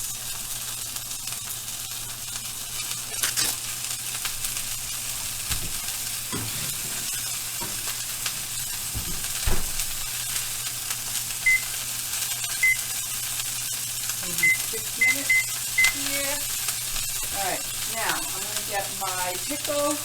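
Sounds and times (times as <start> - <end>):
patties sizzling in a pan: 0.0 - 20.0
utensils knocking cookware: 5.5 - 9.4
short electronic beep: 11.5 - 11.7, 12.6 - 12.9, 14.4 - 16.0.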